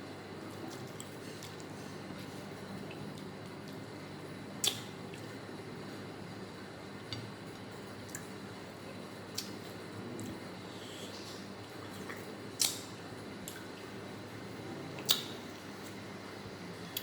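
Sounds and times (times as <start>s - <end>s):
steady low hum: 0.0s - 17.0s
wet eating squishes: 8.9s - 14.0s, 15.0s - 16.0s.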